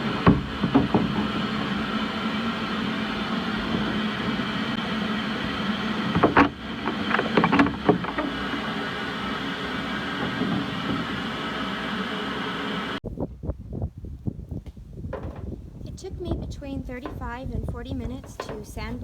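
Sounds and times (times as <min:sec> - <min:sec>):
sharp knocks: 0:00.0 - 0:04.8, 0:05.4 - 0:09.3.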